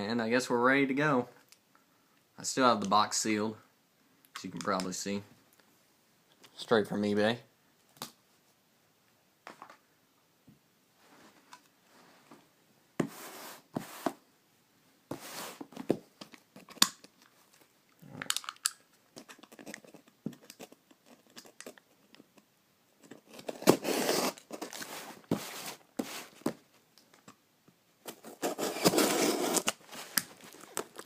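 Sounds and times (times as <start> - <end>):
plastic wrapping tearing and crinkling: 28.8 - 31.0.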